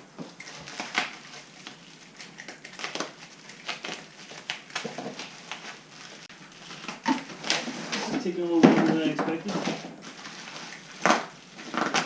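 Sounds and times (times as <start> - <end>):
cardboard rustling and scraping: 3.0 - 12.0.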